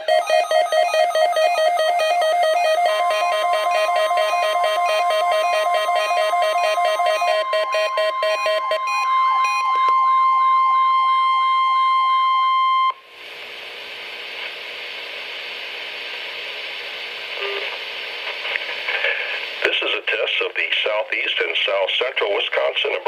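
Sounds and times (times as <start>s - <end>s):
steady alert tone: 0.0s - 9.8s
wavering tone: 0.1s - 12.9s
radio hiss: 13.2s - 23.0s.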